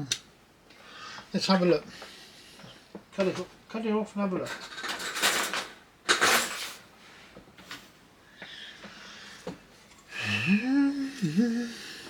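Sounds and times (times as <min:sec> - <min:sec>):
loud breathy noise: 0:08.3 - 0:12.0
man humming hmm: 0:10.1 - 0:12.0.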